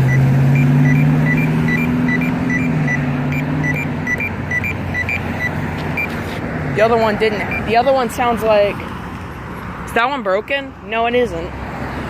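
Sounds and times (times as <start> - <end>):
short high beeps: 0.0 - 6.2, 7.4 - 7.8
vehicle engine humming: 0.0 - 12.0.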